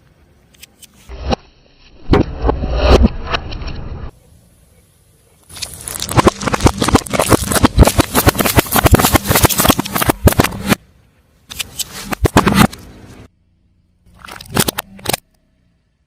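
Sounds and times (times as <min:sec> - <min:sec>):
tyre crushing crunchy objects: 0:05.5 - 0:10.8.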